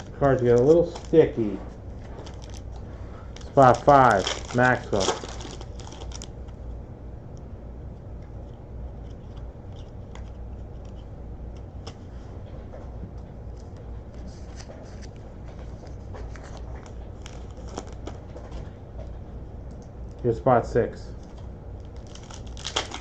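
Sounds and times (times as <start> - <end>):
cards rustling: 0.0 - 6.6, 8.4 - 12.4, 13.4 - 19.2, 21.1 - 23.0
steady low hum: 0.0 - 23.0.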